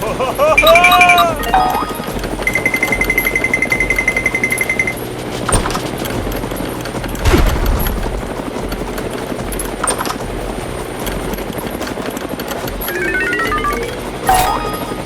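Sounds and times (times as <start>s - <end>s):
machine rattling: 0.0s - 13.0s
rapid high beeping: 0.6s - 5.0s, 12.8s - 15.0s.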